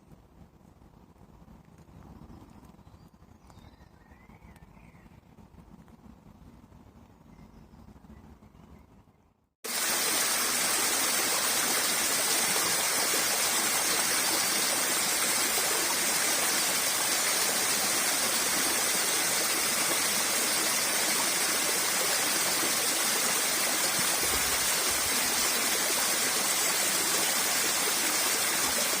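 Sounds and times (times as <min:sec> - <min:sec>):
waterfall rushing: 0:09.7 - 0:29.0.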